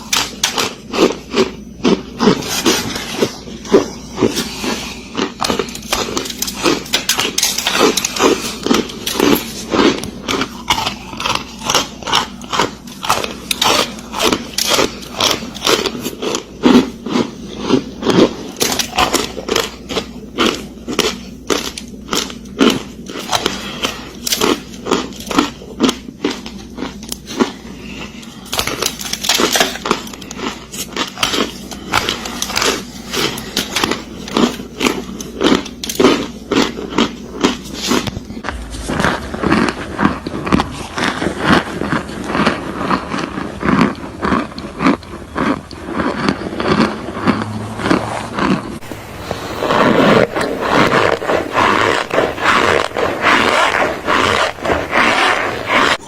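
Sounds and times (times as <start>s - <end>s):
crunchy chewing: 0.0s - 56.0s.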